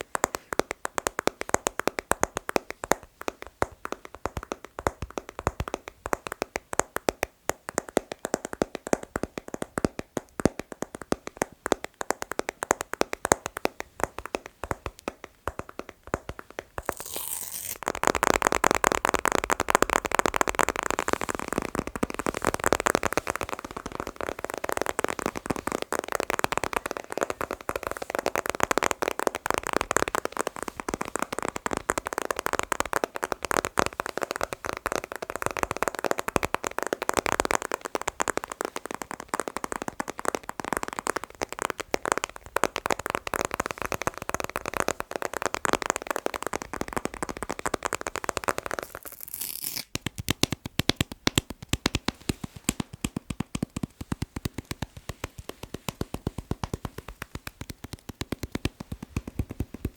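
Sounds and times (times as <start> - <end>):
finger tapping on objects: 49.9 - 59.9.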